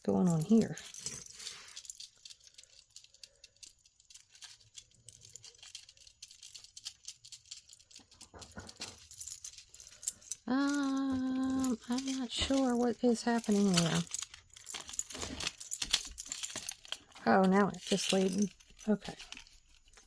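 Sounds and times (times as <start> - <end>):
jewelry clicking and rattling: 0.0 - 20.0.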